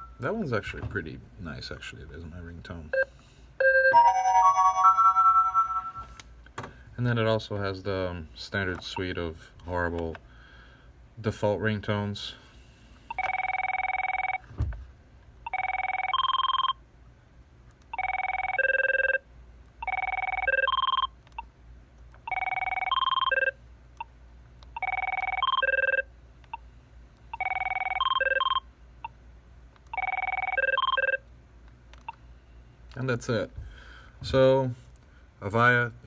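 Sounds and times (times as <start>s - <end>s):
desk phone electronic ringtone: 3.0s - 6.2s, 13.1s - 14.4s, 15.5s - 16.8s, 17.9s - 19.2s, 19.8s - 21.2s, 22.3s - 23.6s, 24.8s - 26.1s, 27.3s - 28.7s, 29.9s - 31.2s.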